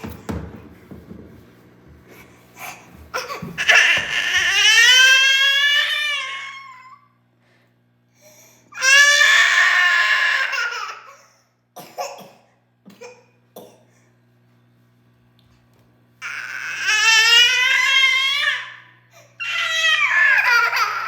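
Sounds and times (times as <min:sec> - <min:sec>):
toddler crying: 0:02.6 - 0:07.0, 0:16.2 - 0:21.0.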